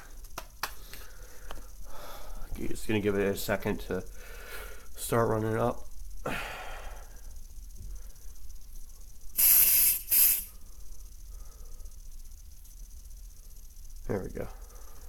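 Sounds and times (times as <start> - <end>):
aerosol spray hissing: 9.3 - 10.8.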